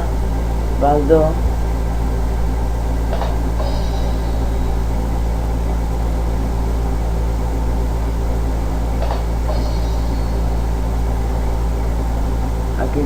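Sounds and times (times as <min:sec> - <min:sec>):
low electrical hum: 0:00.0 - 0:13.0
noise haze: 0:00.0 - 0:13.0.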